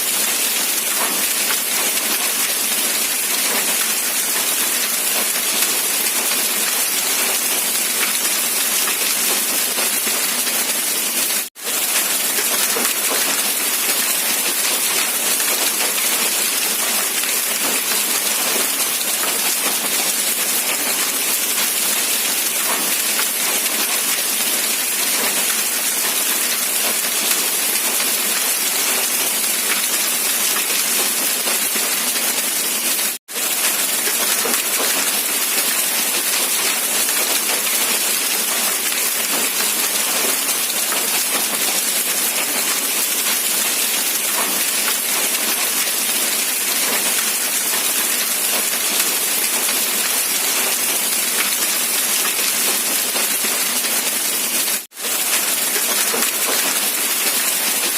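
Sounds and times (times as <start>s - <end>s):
steady rain falling: 0.0s - 57.9s.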